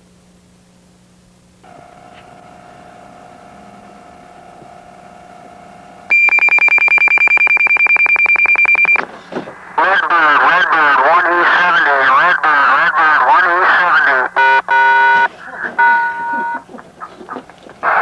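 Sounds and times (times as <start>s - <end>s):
quiet electronic tone: 1.7s - 9.0s, 14.4s - 16.6s
pager alert beeping rapidly: 6.1s - 9.0s.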